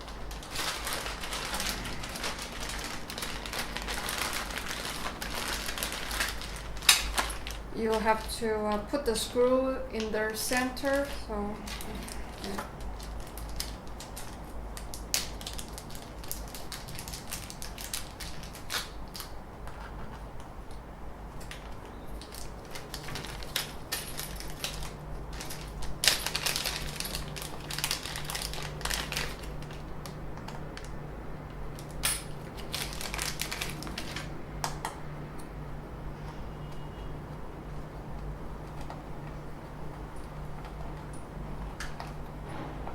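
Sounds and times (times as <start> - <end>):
steady low hum: 0.0 - 42.9
clicks and knocks of small parts: 4.8 - 7.6, 21.4 - 35.5.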